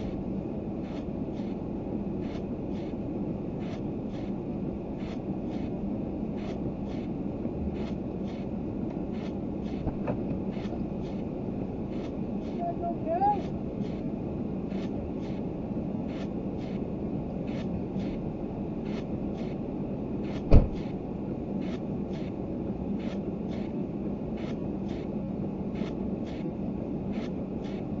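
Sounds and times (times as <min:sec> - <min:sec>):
car engine and road rumble: 0:00.0 - 0:28.0
sharp thump: 0:20.4 - 0:20.8.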